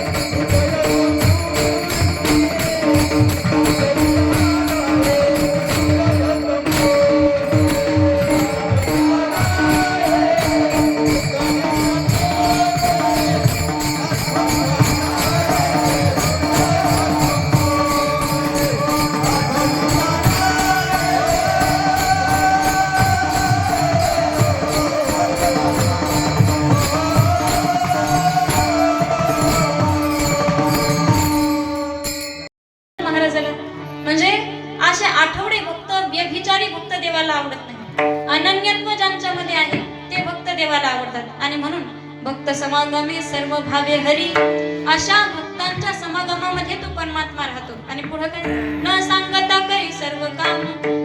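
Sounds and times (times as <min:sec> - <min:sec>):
hand drum beating: 0:00.0 - 0:31.4
small hand cymbals jingling: 0:00.0 - 0:32.5.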